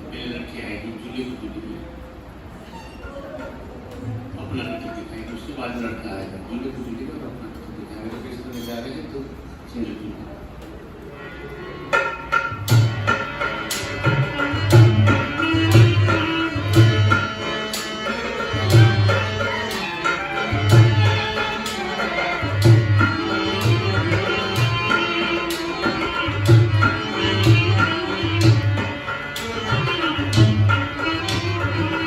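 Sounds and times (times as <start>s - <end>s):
held instrumental melody: 11.1s - 32.0s
hand drum beating: 12.0s - 32.0s.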